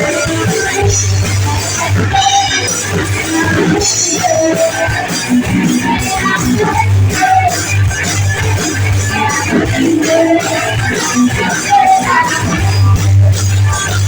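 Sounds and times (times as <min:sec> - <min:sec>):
bass line: 0:00.0 - 0:14.0
drums with cymbals: 0:00.0 - 0:14.0
guitars strummed: 0:00.0 - 0:14.0.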